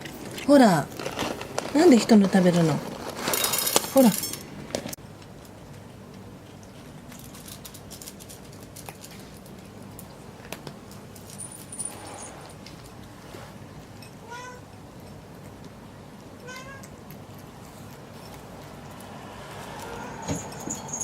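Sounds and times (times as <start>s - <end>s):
cat meowing: 14.2s - 14.6s, 16.4s - 16.9s.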